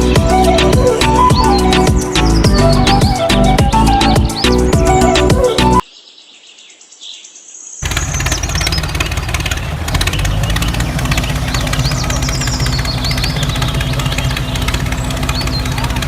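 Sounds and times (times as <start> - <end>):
background music: 0.0 - 5.8
motor running with fast clatter: 7.8 - 16.0.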